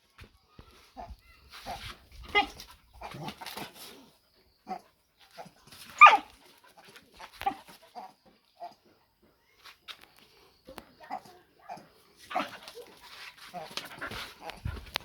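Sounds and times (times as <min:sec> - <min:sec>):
puppy yelping: 0:06.0 - 0:06.3.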